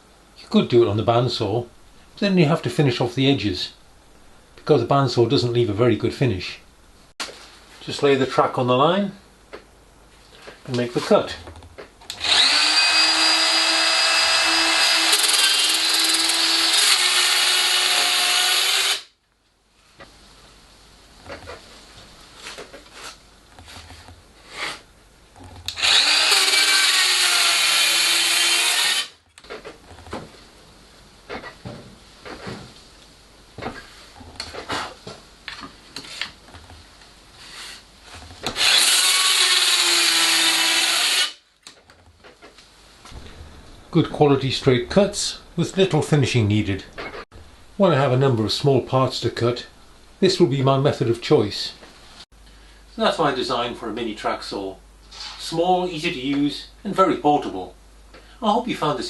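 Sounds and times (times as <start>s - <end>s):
circular saw cutting with high whine: 12.2s - 19.1s, 25.8s - 29.2s, 38.6s - 41.4s
knocks and rubbing of handling: 21.1s - 24.4s.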